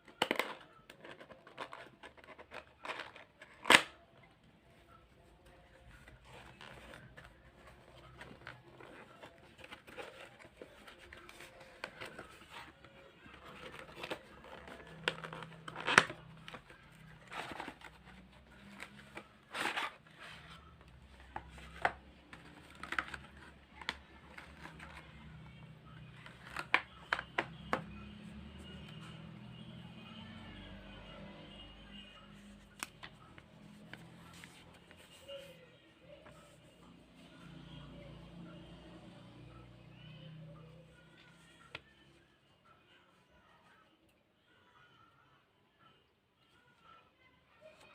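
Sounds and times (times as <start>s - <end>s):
plastic and cardboard rustling: 0.0s - 30.5s, 32.0s - 37.7s.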